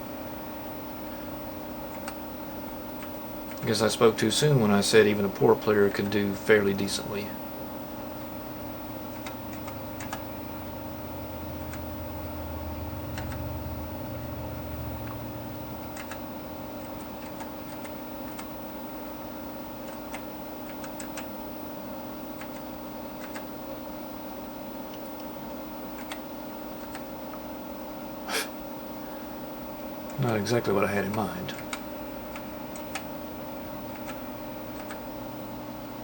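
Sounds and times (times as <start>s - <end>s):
electrical hum: 0.0s - 36.0s
computer keys clicking: 1.9s - 2.2s, 9.1s - 10.2s, 11.6s - 11.9s, 13.1s - 13.5s, 15.8s - 16.2s, 16.8s - 18.5s, 19.8s - 21.3s, 22.4s - 23.5s, 25.9s - 26.2s, 26.8s - 27.4s, 31.1s - 33.1s, 33.9s - 35.0s.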